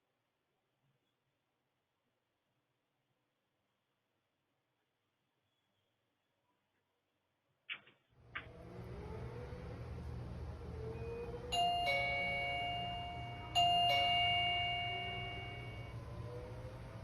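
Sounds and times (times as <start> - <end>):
electronic doorbell ding-dong: 11.5 - 16.2.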